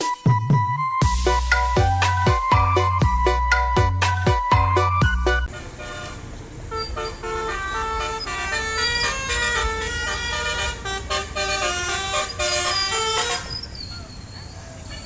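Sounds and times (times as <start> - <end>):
low engine rumble: 1.1 - 15.0
multi-tone musical horn: 5.4 - 13.7.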